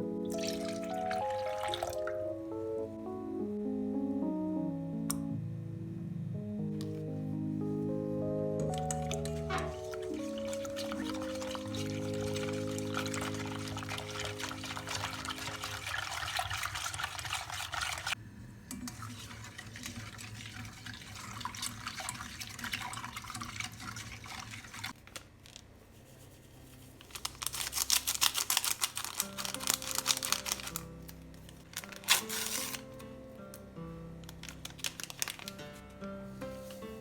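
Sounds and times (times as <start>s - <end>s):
soft background music: 0.0s - 18.2s, 26.6s - 37.0s
liquid pouring: 0.3s - 2.2s, 8.8s - 18.2s, 18.8s - 25.0s.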